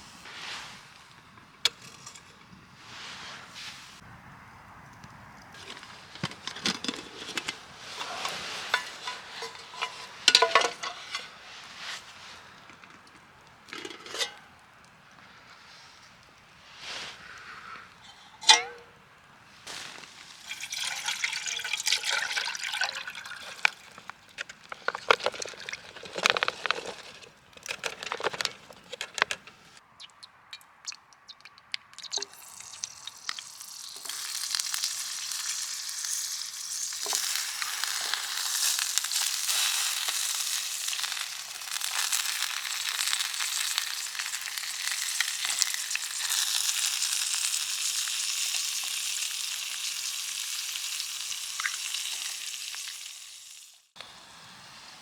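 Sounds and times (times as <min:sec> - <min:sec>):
food sizzling in a pan: 0:32.2 - 0:55.0.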